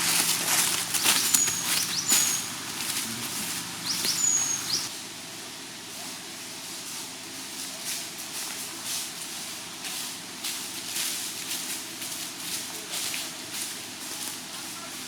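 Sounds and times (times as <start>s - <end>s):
high whistling squeals: 0.0s - 4.9s.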